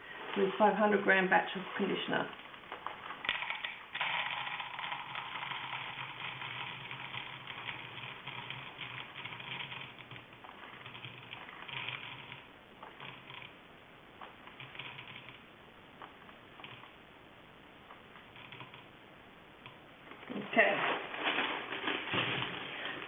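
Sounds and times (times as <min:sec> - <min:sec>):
pellets rattling: 0:01.8 - 0:13.5, 0:20.1 - 0:23.0.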